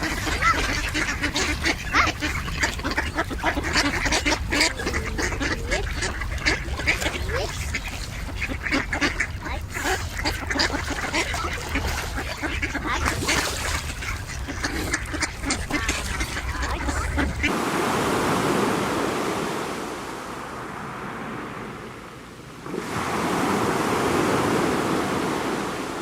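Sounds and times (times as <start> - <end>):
animal calls overlapping: 1.9 - 9.0.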